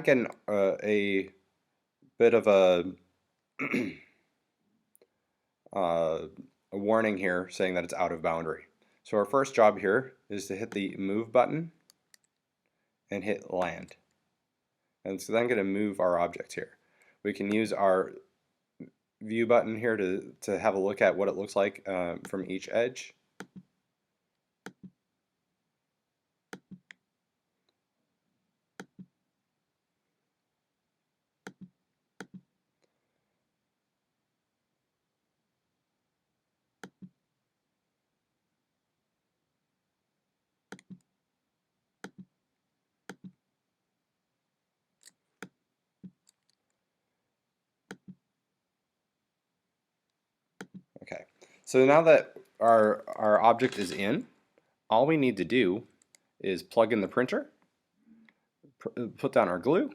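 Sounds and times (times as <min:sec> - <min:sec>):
computer mouse clicking: 0:23.4 - 0:23.7, 0:24.6 - 0:25.0, 0:26.5 - 0:27.0, 0:28.8 - 0:29.1, 0:31.4 - 0:32.5, 0:40.7 - 0:41.1, 0:42.0 - 0:42.3, 0:43.1 - 0:43.4, 0:50.6 - 0:50.9.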